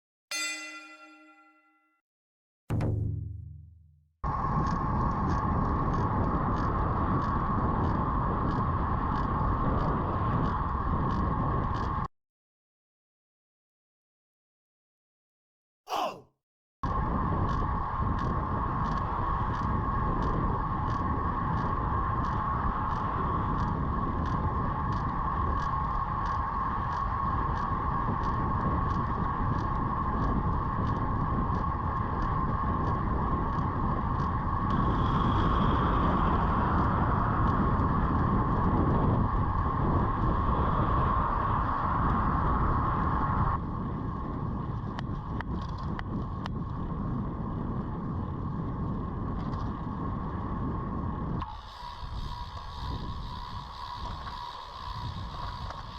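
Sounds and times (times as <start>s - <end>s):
road and wind noise: 4.3s - 12.1s, 16.8s - 55.9s
sharp bicycle crank clicks: 51.4s - 55.9s.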